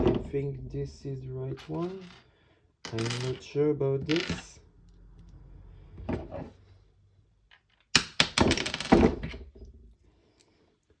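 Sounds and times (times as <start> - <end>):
tools clattering on work surface: 1.6 - 2.2, 2.9 - 3.5.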